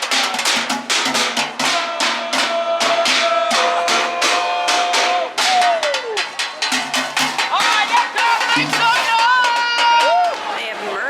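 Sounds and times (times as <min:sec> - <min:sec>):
drumming on trash cans and buckets: 0:00.0 - 0:11.0.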